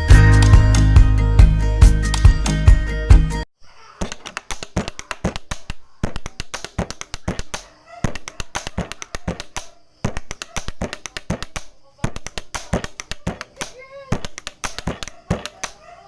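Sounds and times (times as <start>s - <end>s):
tapping on hard objects: 4.0s - 15.8s.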